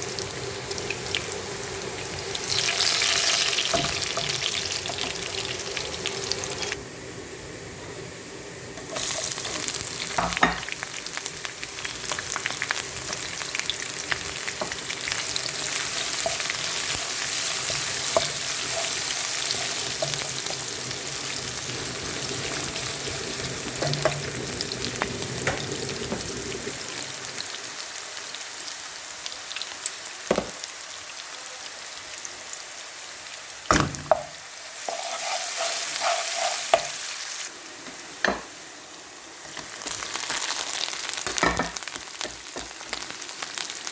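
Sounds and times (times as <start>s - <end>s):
food sizzling in a pan: 0.0s - 43.9s.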